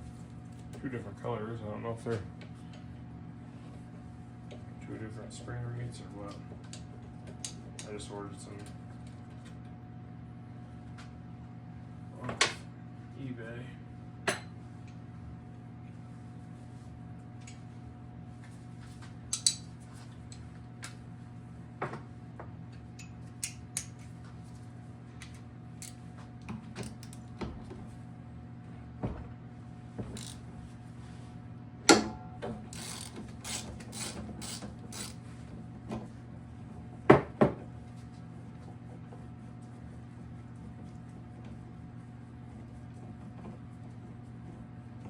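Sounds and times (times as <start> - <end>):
steady low hum: 0.0 - 45.0
socket ratchet clicking: 32.8 - 35.2.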